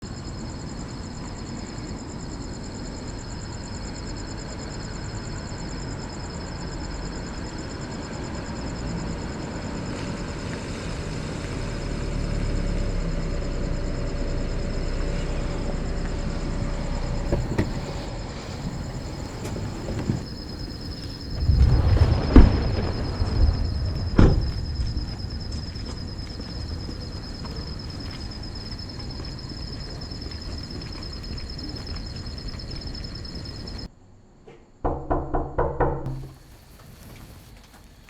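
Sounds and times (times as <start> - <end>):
vehicle engine rumble: 10.8 - 27.8.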